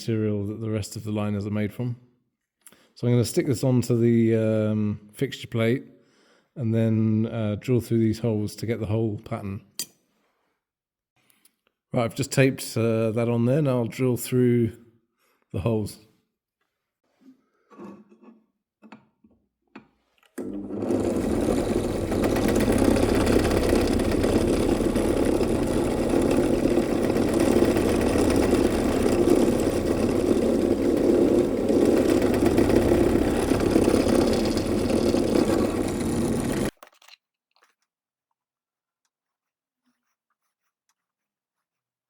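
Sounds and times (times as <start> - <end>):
electric drill drilling metal: 20.4 - 36.7.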